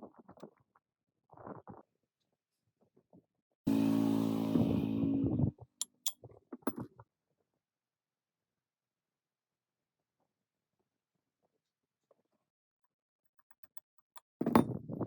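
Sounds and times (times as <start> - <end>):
motor running loudly: 3.7 - 5.5.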